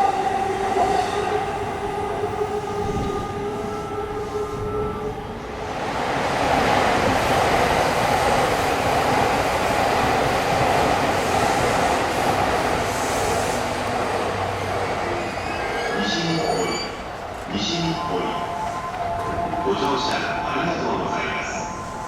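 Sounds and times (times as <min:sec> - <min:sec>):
train wheels on rail: 0:05.5 - 0:22.0.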